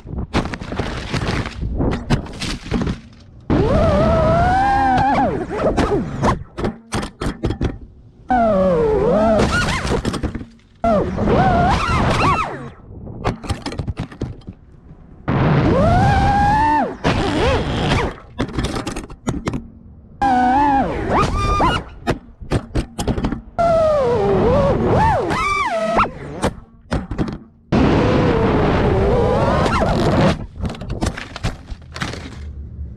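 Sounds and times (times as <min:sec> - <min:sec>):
drone motors whining: 0:03.5 - 0:06.2, 0:08.3 - 0:10.0, 0:10.8 - 0:12.8, 0:15.3 - 0:18.2, 0:20.2 - 0:22.0, 0:23.6 - 0:26.4.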